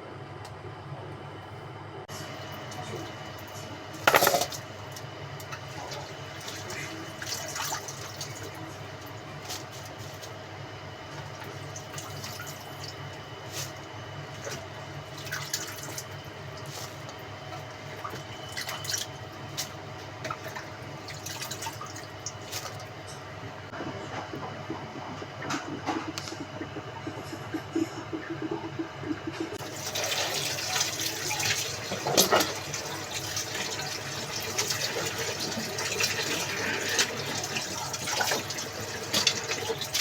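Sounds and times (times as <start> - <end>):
steady hum: 0.0 - 40.0
water dripping and splashing: 5.4 - 8.7, 11.1 - 22.9.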